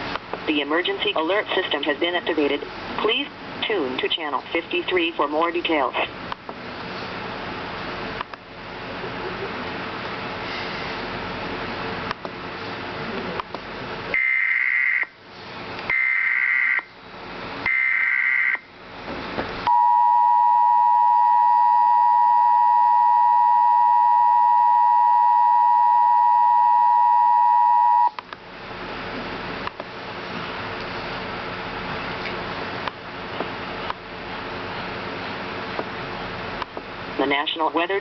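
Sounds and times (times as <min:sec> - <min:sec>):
two-tone attention signal: 0:19.7 - 0:28.2.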